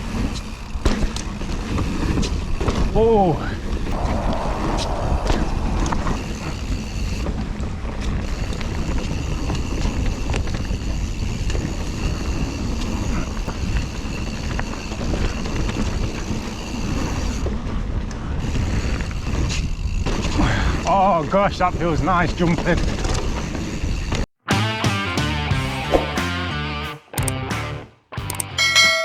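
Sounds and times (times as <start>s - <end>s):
bike clicks and rattles: 0.0s - 2.9s, 8.2s - 20.6s
wind buffeting microphone: 3.7s - 8.9s.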